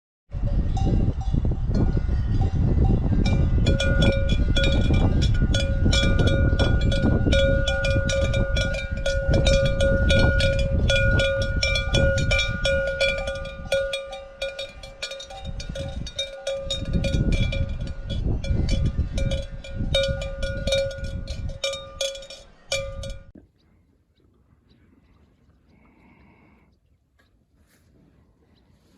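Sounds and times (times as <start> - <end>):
cowbells clanging: 0.4 - 23.4.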